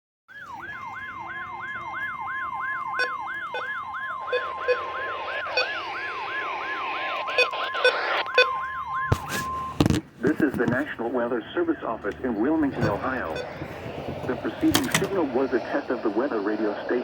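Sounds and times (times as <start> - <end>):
sweeping siren-like alarm: 0.3 - 9.9, 11.1 - 17.0
steady high alarm beep: 2.9 - 9.8, 12.7 - 15.6
static hiss: 10.1 - 17.0.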